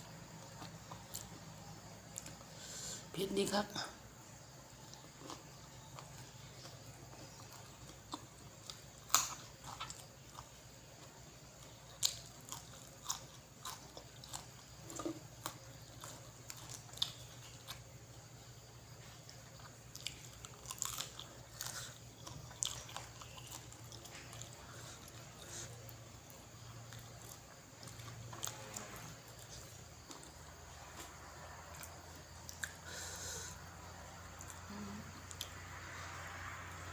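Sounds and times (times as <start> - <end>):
low steady hum: 0.0 - 36.9
person chewing food: 0.1 - 2.6, 4.8 - 35.6.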